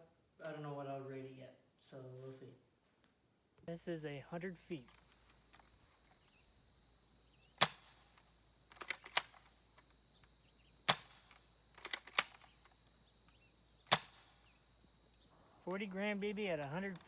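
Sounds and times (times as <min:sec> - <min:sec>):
airsoft rifle firing snaps: 0:07.6 - 0:09.6, 0:10.8 - 0:12.9, 0:13.9 - 0:14.5.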